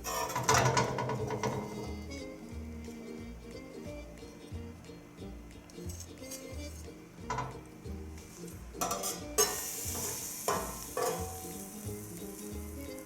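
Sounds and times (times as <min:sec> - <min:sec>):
utensil scraping frying pan: 0:00.0 - 0:02.4, 0:05.8 - 0:13.0
background music: 0:00.0 - 0:13.0
food sizzling: 0:00.0 - 0:13.0.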